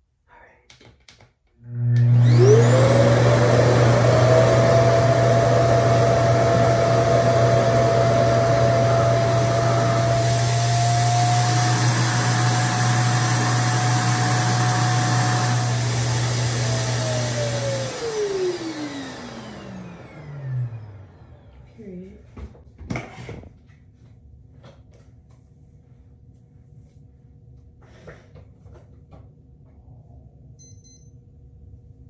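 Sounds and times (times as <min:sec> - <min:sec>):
hair dryer suction motor running: 0:01.6 - 0:21.6.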